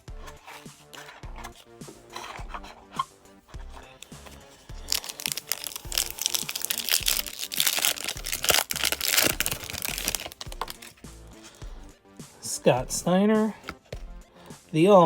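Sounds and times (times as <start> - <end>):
quiet background music: 0.0 - 15.0
foil wrapper crinkling: 3.8 - 11.0.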